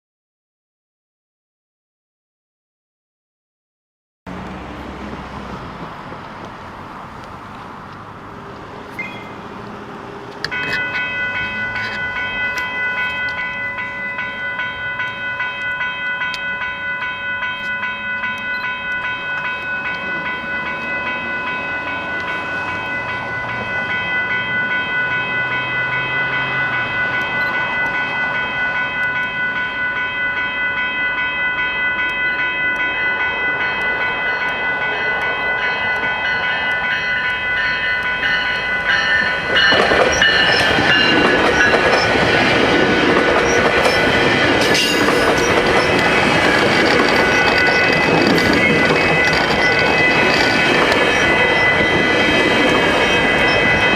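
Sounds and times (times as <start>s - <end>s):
train rumble: 4.3s - 53.9s
level crossing warning bell: 10.4s - 53.9s.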